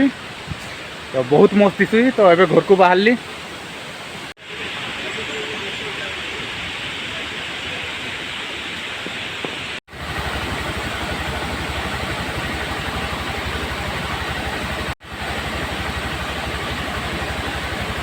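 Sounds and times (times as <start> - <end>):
waterfall rushing: 0.0 - 18.0
deep pulsing rumble: 9.9 - 18.0.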